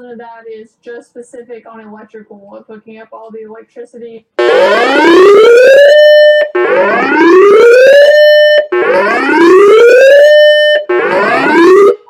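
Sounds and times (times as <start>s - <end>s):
wailing siren alert: 4.4s - 12.0s.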